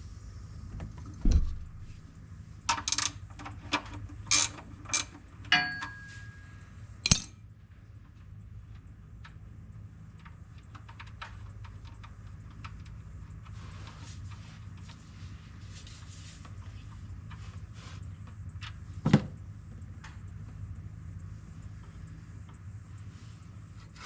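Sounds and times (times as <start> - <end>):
low hum: 0.0 - 2.6
hand tools tapping metal: 4.3 - 6.4, 7.1 - 7.3.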